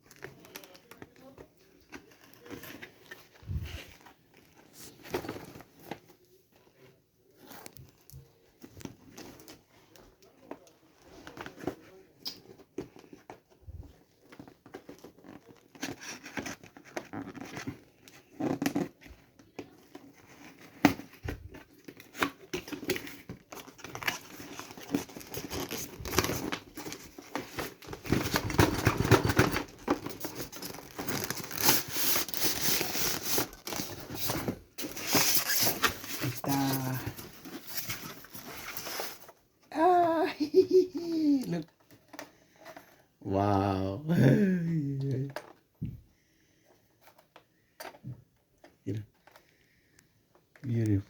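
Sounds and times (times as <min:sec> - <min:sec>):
packaging rustling and tearing: 0:00.0 - 0:06.3, 0:07.3 - 0:39.5.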